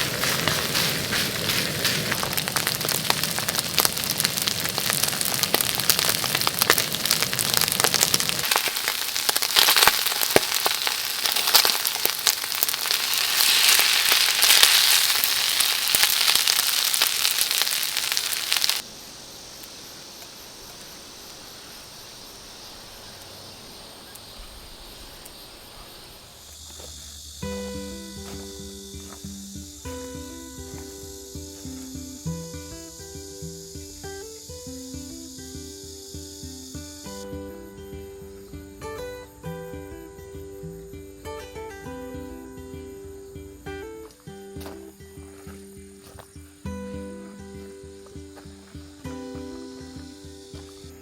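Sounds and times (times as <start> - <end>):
food sizzling in a hot pan: 0.0 - 19.8.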